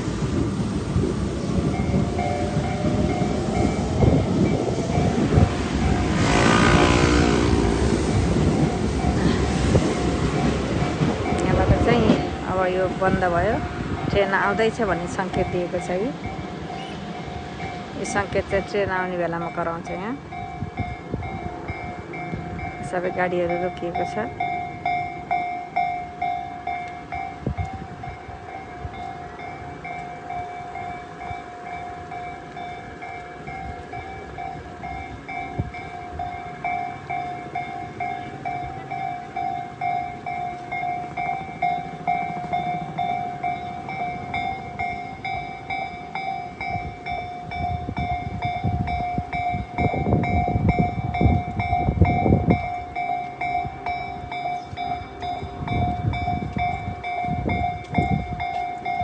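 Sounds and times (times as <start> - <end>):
train wheels clattering over rails: 1.6 - 12.6
level-crossing alarm dinging: 1.6 - 59.0.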